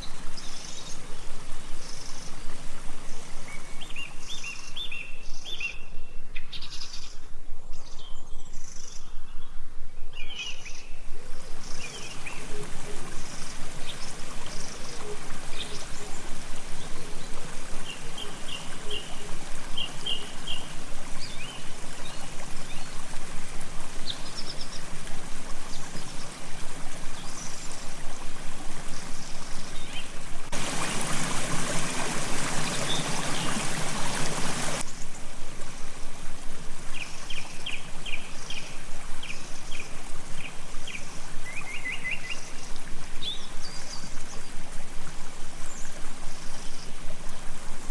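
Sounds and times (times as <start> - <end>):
water running: 11.5 - 34.8
small birds chirping: 28.9 - 34.8.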